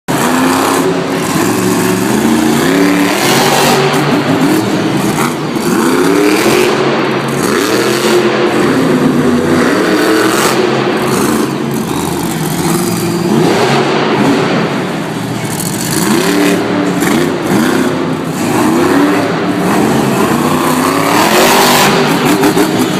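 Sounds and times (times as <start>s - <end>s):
monster truck engine revving: 0.1s - 22.9s.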